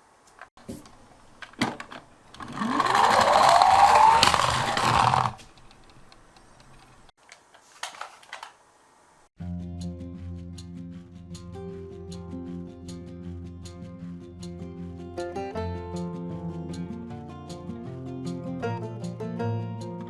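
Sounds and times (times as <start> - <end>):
toy car wheels whirring: 2.3 - 7.1.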